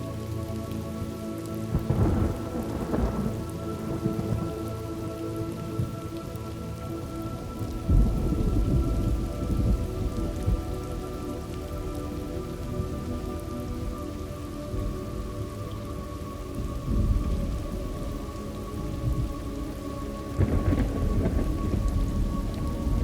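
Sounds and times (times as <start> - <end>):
steady rain: 0.0 - 23.0
thunder rolling: 1.8 - 4.5, 7.8 - 10.9, 20.4 - 23.0.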